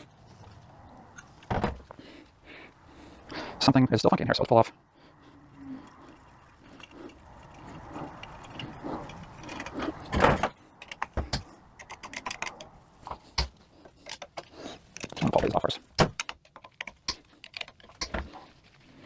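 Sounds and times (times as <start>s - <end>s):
metal parts scraping and sliding: 5.4s - 19.0s
sharp metallic clicks: 6.8s - 18.4s.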